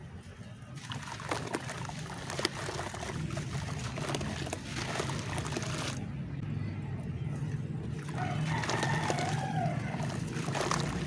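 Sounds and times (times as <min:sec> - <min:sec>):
low steady hum: 0:00.0 - 0:11.0
dirt fizzing in water: 0:00.8 - 0:06.0, 0:08.0 - 0:11.0.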